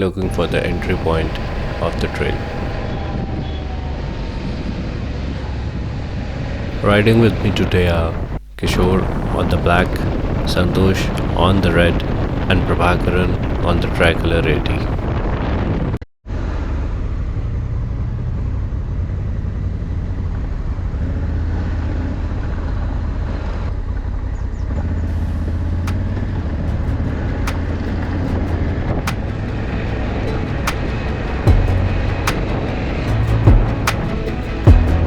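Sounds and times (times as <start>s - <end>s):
motorcycle engine running: 16.4s - 35.0s.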